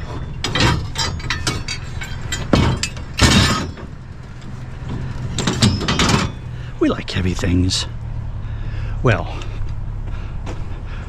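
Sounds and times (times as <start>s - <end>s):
heavy scrap metal clanking: 0.0s - 7.0s
steady low hum: 0.0s - 11.0s.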